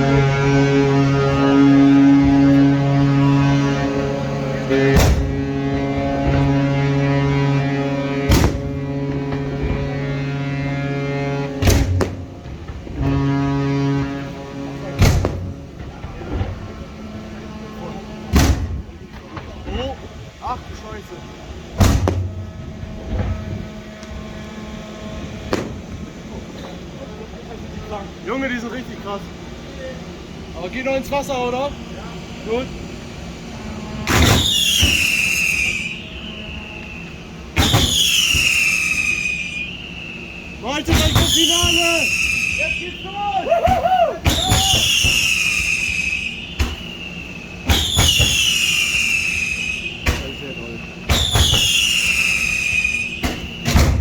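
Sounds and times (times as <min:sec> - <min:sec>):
ship's horn blast: 0:00.0 - 0:54.0
firework shells bursting: 0:08.3 - 0:10.6, 0:11.2 - 0:17.6, 0:21.7 - 0:24.3, 0:25.3 - 0:26.4, 0:33.6 - 0:54.0.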